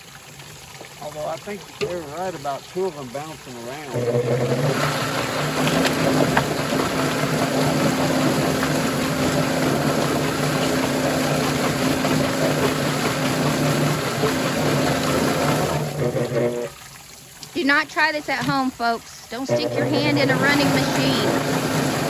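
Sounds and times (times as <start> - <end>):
motor hum: 0.0 - 22.0.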